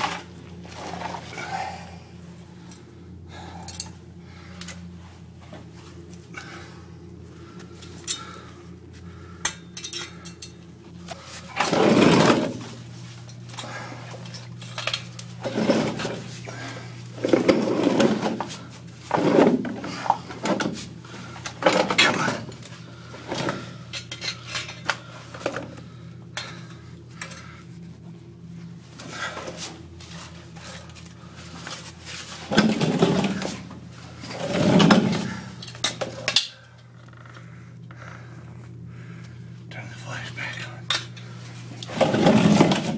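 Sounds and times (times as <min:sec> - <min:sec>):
steady low hum: 0:00.0 - 0:42.9
metallic clinks: 0:09.4 - 0:10.6.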